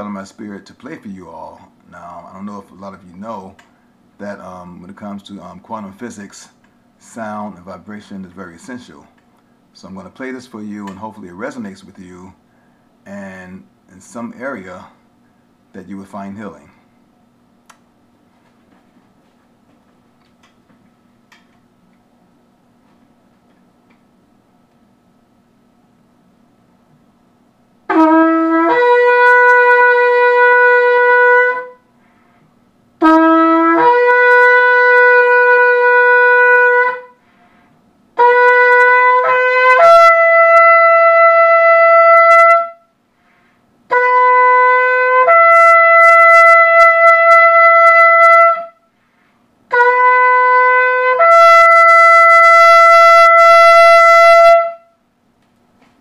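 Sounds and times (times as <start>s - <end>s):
shofar blasts: 27.9s - 31.9s, 33.0s - 37.3s, 38.2s - 43.0s, 43.9s - 49.0s, 49.7s - 55.0s.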